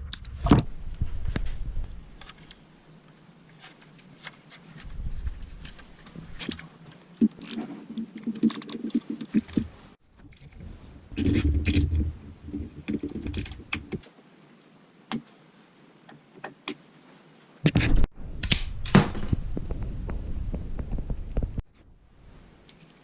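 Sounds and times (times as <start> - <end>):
tools clicking and knocking: 11.2 - 14.0.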